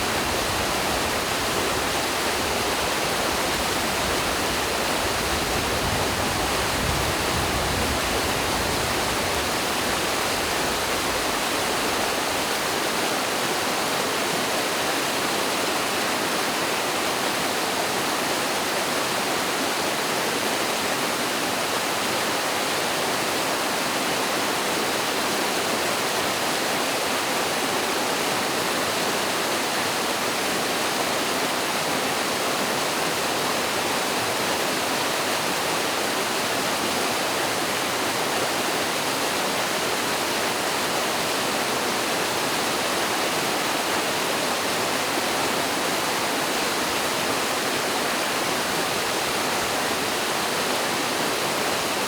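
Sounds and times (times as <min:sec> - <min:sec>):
water rushing over waterfall: 0:00.0 - 0:52.0.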